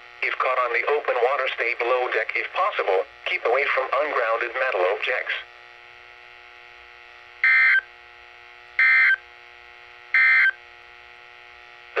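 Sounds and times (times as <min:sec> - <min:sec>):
steady radio hum: 0:00.0 - 0:06.5, 0:07.2 - 0:08.0, 0:10.1 - 0:12.0.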